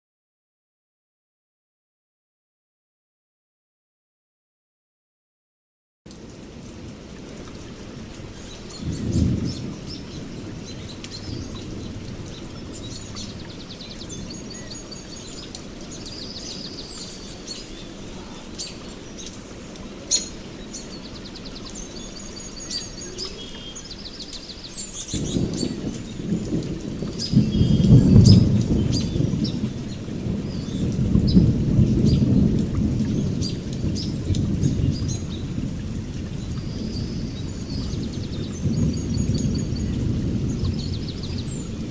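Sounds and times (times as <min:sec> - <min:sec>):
steady rain: 0:06.1 - 0:41.9
birds chirping and trilling: 0:08.3 - 0:35.6, 0:36.4 - 0:41.9
thunder rumbling: 0:08.5 - 0:17.2, 0:24.9 - 0:41.9.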